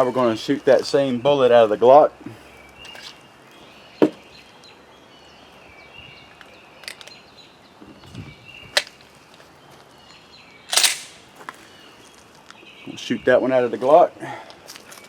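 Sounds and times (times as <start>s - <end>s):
small birds chirping: 0.0s - 15.0s
handgun clicks and clacks: 6.4s - 7.2s, 10.7s - 11.2s.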